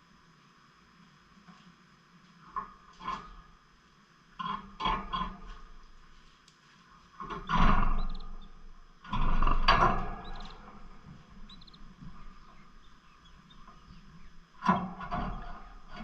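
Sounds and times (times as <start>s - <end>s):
lovebirds squawking: 7.4s - 8.6s, 9.6s - 16.0s
high bird chirps: 8.0s - 8.6s, 10.1s - 10.7s, 11.4s - 15.5s.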